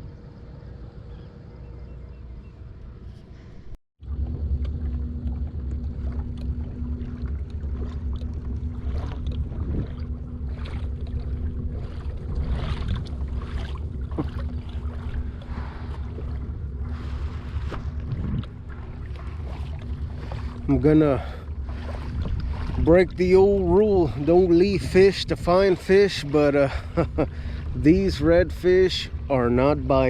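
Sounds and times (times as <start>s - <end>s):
steady hum: 0.0s - 30.0s
wind rumble on microphone: 3.4s - 30.0s
water splashing against hull: 4.0s - 30.0s.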